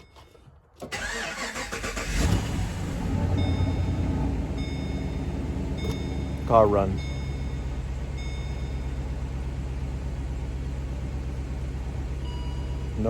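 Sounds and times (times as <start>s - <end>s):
car engine idling: 0.8s - 13.0s.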